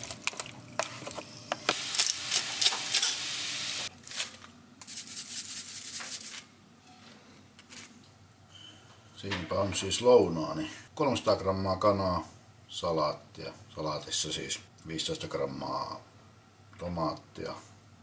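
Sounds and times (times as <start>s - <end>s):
kitchen scraping: 1.8s - 7.0s.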